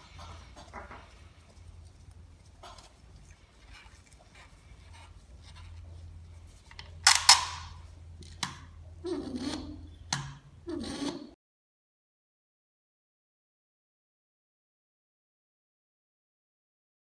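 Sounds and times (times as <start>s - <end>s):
rustling handling noises: 0.0s - 8.4s
plastic parts clicking: 6.7s - 8.6s.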